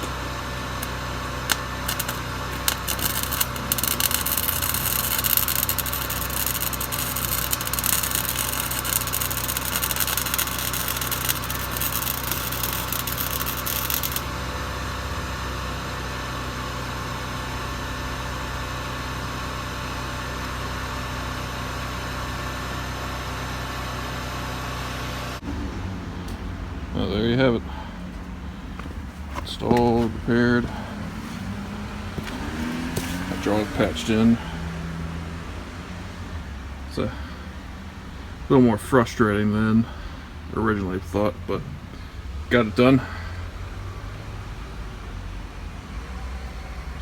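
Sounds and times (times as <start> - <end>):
engine running: 0.0 - 42.5
crackling hiss with clicks: 0.8 - 14.3.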